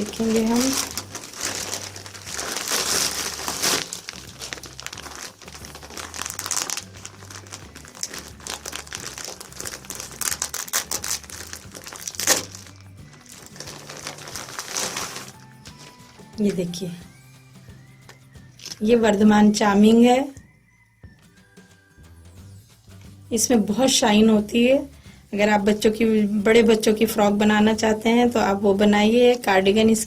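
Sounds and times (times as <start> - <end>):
packaging crinkling: 0.0 - 16.6, 18.6 - 18.8.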